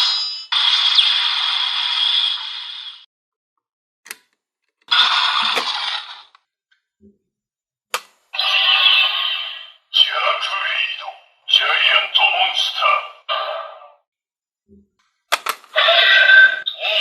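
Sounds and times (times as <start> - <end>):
toy electronic sound effects: 4.9 - 6.3, 15.8 - 17.0.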